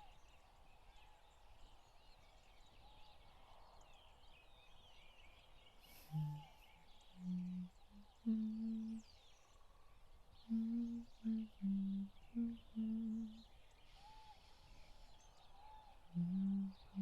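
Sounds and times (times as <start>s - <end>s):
birds chirping: 5.8s - 9.2s, 10.4s - 17.0s
woman humming softly: 6.0s - 9.2s, 10.4s - 13.6s, 16.1s - 17.0s.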